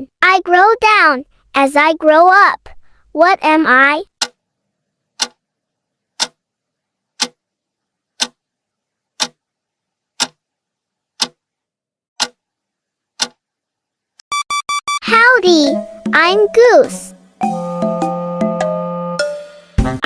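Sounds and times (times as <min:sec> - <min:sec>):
clock ticking: 0:04.2 - 0:04.4, 0:05.2 - 0:05.4.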